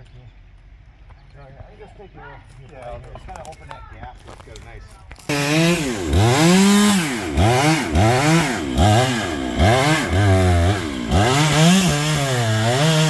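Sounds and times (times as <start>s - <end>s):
chainsaw cutting tree trunk: 5.2s - 13.0s.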